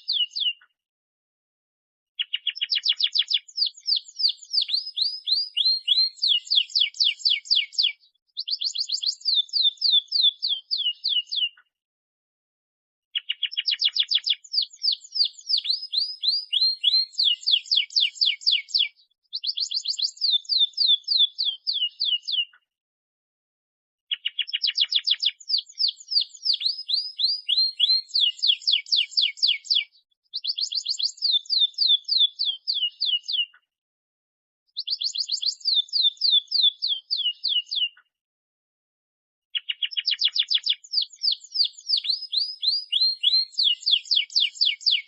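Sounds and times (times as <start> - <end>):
canary singing trills: 0.0 - 0.6, 2.2 - 11.6, 13.2 - 22.6, 24.1 - 33.6, 34.8 - 38.0, 39.5 - 45.0.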